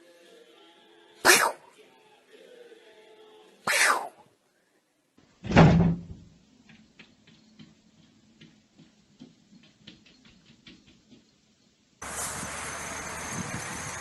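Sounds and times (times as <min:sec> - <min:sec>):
loud thump: 0:05.4 - 0:06.2
faint clicks and taps: 0:06.6 - 0:11.4.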